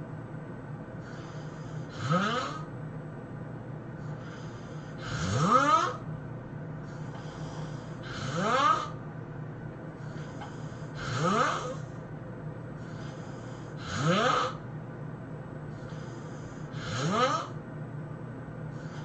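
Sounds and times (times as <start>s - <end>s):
person snoring: 1.0s - 2.7s, 4.1s - 6.0s, 7.0s - 9.0s, 10.1s - 11.9s, 12.8s - 14.6s, 15.9s - 17.6s
breath hiss: 12.8s - 14.0s.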